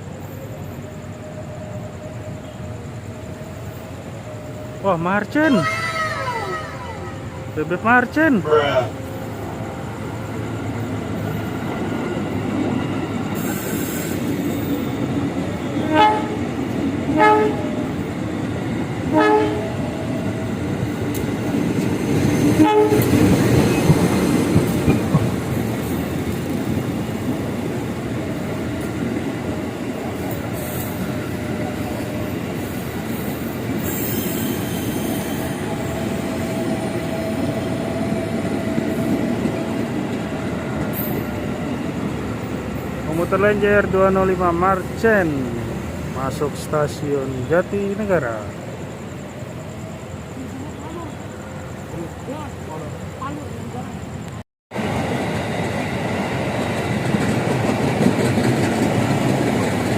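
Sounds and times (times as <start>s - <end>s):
electric train running past: 0.0s - 59.9s
train horn toots: 15.7s - 16.4s, 17.1s - 17.9s, 19.1s - 19.8s, 22.6s - 23.4s
faint wheel squeal: 32.6s - 35.8s.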